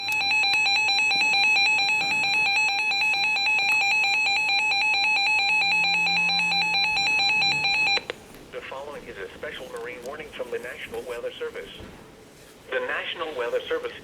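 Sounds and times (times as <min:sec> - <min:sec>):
rapidly pulsing electronic beep: 0:00.0 - 0:08.1.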